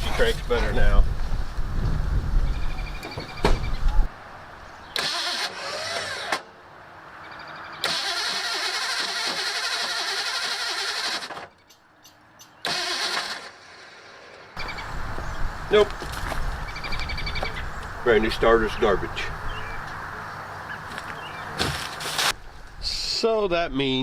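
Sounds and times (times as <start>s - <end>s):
starter motor cranking engine: 5.0s - 6.4s, 7.8s - 11.5s, 12.6s - 13.8s.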